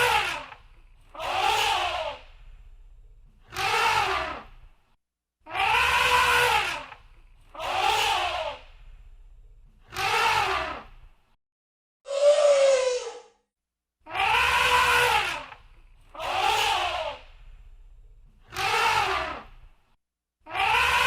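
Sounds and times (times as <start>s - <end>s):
elephant trumpeting: 5.5s - 6.9s, 14.1s - 15.5s, 20.5s - 21.0s.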